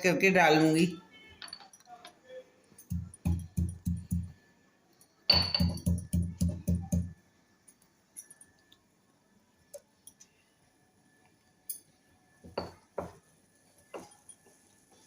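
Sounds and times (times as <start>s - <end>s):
pestle pounding in a mortar: 2.9s - 4.3s, 5.3s - 7.1s.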